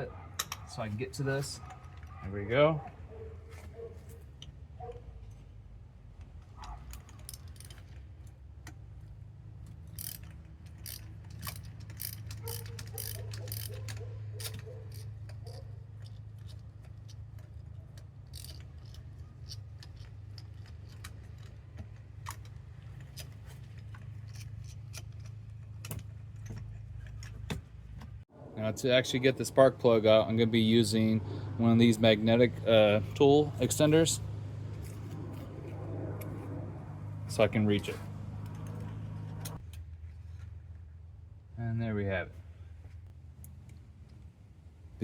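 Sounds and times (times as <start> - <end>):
socket wrench ratchet clicking: 9.8 - 21.5
low hum: 28.3 - 41.6.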